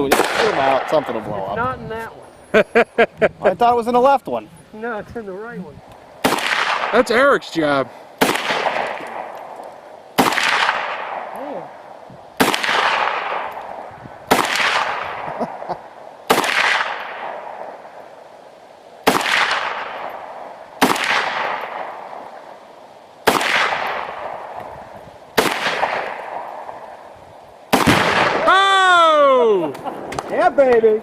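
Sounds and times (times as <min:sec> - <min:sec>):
rifle shots echoing: 0:00.0 - 0:01.3, 0:06.2 - 0:18.1, 0:19.0 - 0:22.6, 0:23.2 - 0:24.7, 0:25.3 - 0:28.6.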